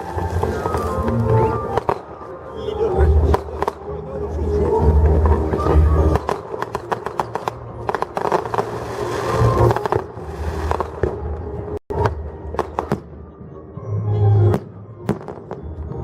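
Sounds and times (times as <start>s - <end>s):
fireworks bangs: 0.0s - 2.3s, 3.0s - 3.8s, 4.6s - 13.2s
fireworks crackle: 0.0s - 13.1s.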